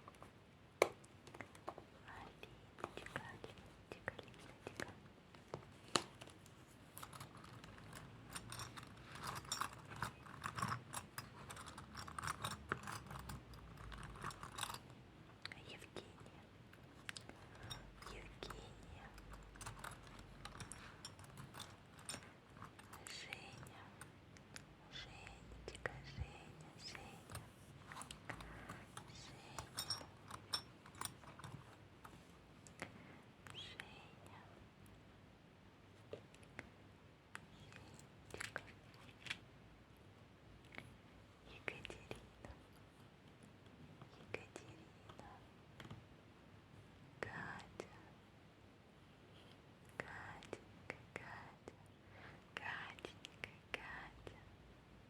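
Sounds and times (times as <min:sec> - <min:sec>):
jewellery clinking: 0:06.9 - 0:15.0, 0:17.0 - 0:24.1, 0:26.9 - 0:32.2.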